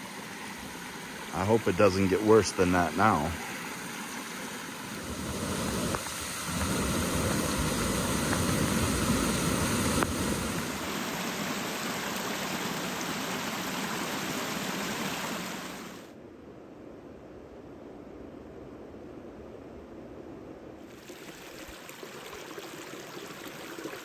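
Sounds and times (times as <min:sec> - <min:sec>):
creek in flood rushing: 0:00.0 - 0:16.1.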